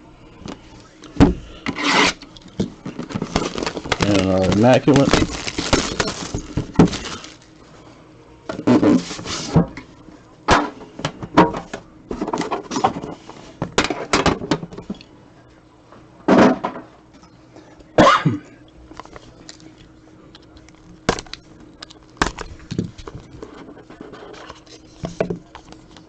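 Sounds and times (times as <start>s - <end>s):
card packaging rustling: 2.8s - 7.5s.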